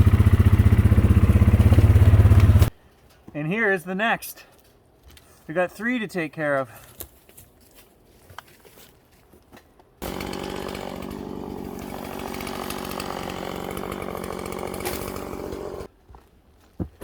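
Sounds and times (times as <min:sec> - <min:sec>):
chainsaw cutting through tree: 0:10.0 - 0:15.9.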